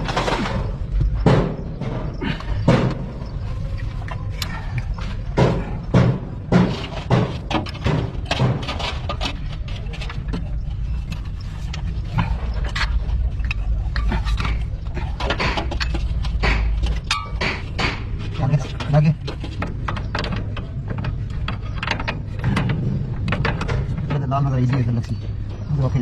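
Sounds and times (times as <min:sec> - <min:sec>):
steady low hum: 0:00.0 - 0:26.0
sharp knocks: 0:00.2 - 0:03.4, 0:05.3 - 0:09.0, 0:15.2 - 0:20.6.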